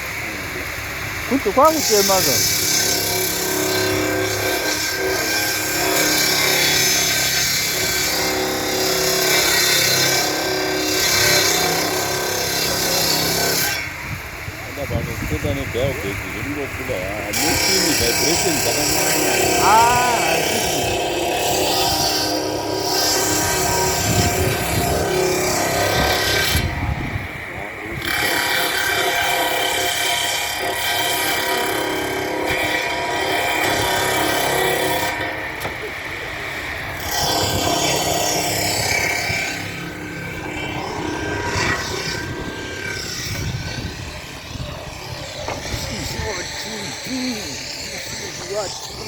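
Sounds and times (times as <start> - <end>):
saw cutting timber: 0.0 - 49.0
workshop machine humming: 0.0 - 49.0.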